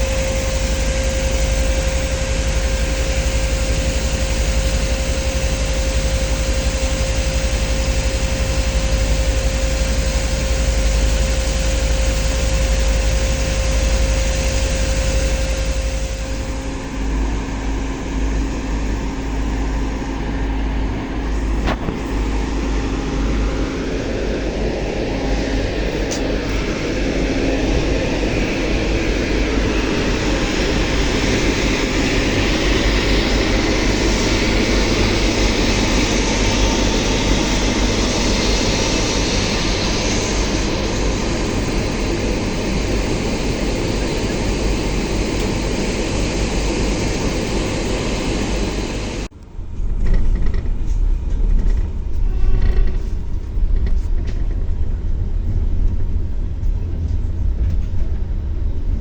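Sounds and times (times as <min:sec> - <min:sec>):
low train rumble: 0:00.0 - 0:59.0
passenger train noise: 0:00.0 - 0:59.0.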